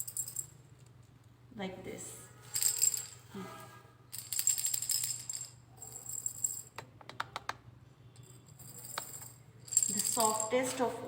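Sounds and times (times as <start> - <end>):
cylinders rattling: 2.4 - 3.3.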